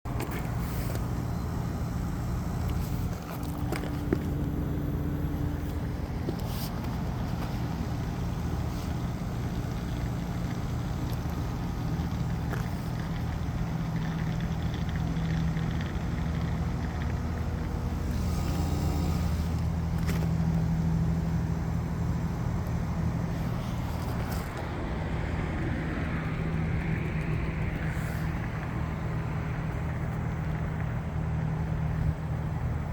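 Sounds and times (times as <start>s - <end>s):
heat pump compressor humming: 0.1s - 32.9s.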